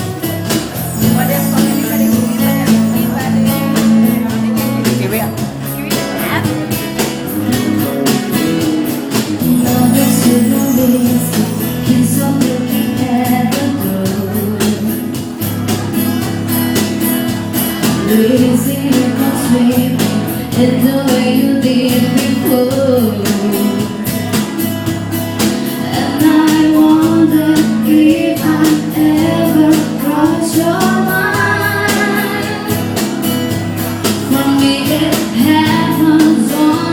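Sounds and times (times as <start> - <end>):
ska band playing: 0.0 - 36.9
person singing: 0.8 - 5.5, 9.2 - 15.3, 17.8 - 24.0, 25.7 - 33.1, 34.2 - 36.9.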